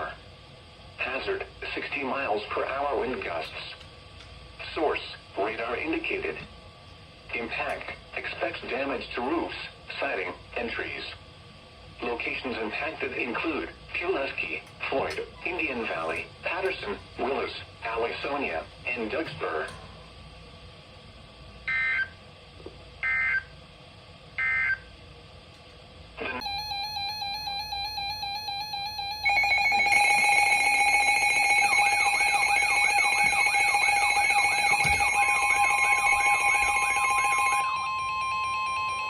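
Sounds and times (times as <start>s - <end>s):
steady attention tone: 26.2s - 39.0s
alert data bursts: 26.4s - 39.0s.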